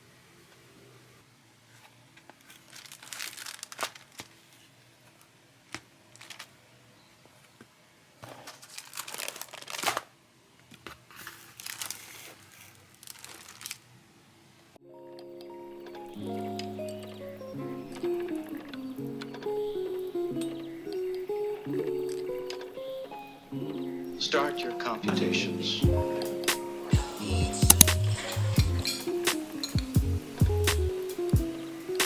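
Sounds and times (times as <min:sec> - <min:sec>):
packaging being torn and crumpled: 0:02.3 - 0:04.6, 0:06.1 - 0:06.5, 0:08.3 - 0:10.2, 0:10.8 - 0:13.9
music: 0:14.8 - 0:32.0.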